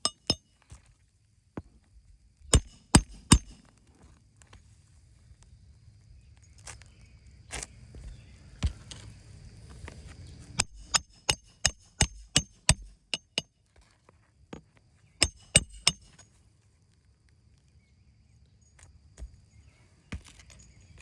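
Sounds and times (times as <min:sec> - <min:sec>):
hammer blows with faint ring: 0:15.2 - 0:16.2.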